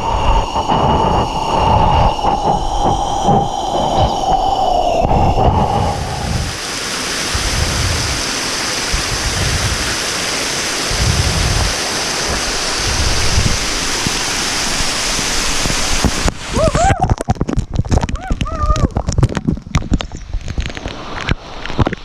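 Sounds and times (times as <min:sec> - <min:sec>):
high whine: 0:00.0 - 0:06.6
waterfall rushing: 0:00.0 - 0:17.2
wind on microphone: 0:00.0 - 0:22.0.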